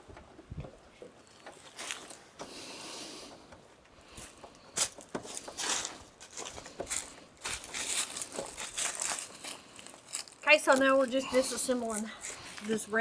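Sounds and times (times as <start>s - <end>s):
plastic parts clicking and scraping: 3.2s - 11.0s.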